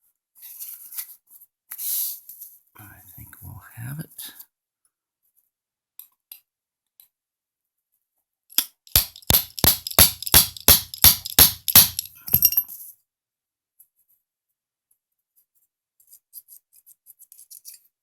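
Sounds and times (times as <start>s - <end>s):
hammer striking pin punch: 8.9s - 12.5s.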